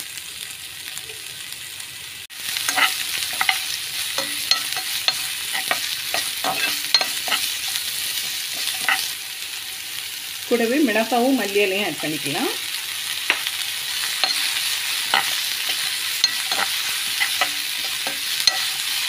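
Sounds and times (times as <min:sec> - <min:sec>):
onion sizzling in a pan: 0:00.0 - 0:19.0
spatula scraping a pan: 0:02.5 - 0:09.2, 0:13.3 - 0:19.0.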